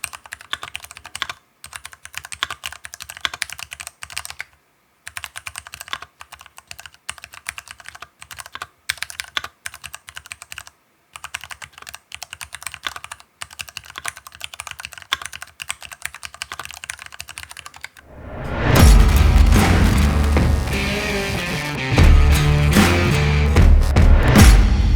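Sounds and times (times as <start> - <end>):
mechanical keyboard typing: 0.0 - 18.0.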